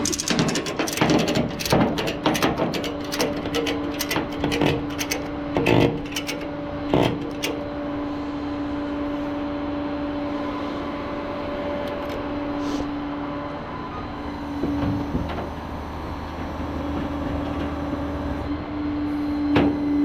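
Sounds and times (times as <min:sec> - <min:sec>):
metal clanks: 0:00.0 - 0:07.7.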